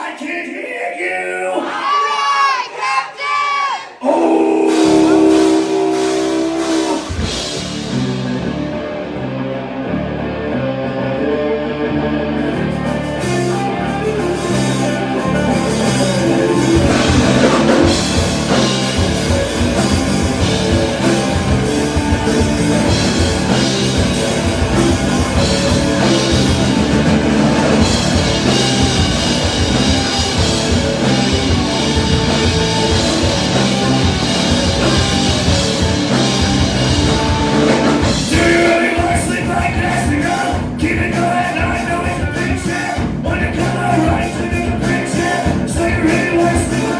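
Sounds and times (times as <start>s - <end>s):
drum kit: 4.6s - 8.9s, 12.4s - 46.9s
instrumental rock music: 4.7s - 46.9s.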